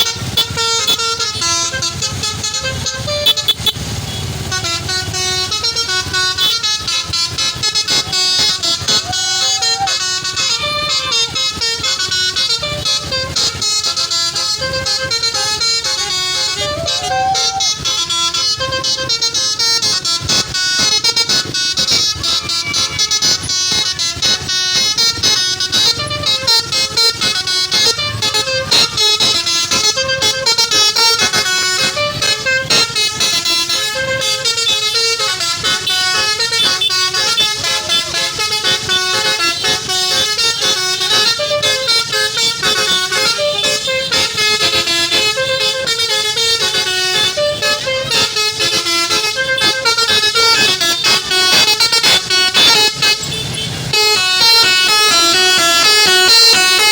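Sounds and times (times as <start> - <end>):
multi-tone bus horn melody: 0.0 - 56.9.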